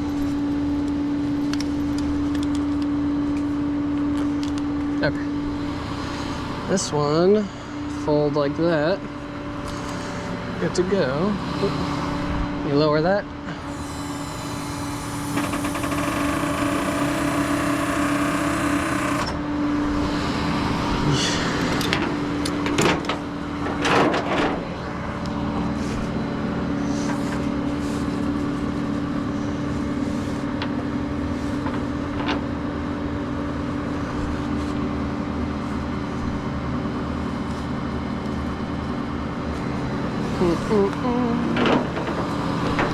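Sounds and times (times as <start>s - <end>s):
truck engine running: 0.0s - 42.9s
metallic clanks and rattles: 21.8s - 24.6s.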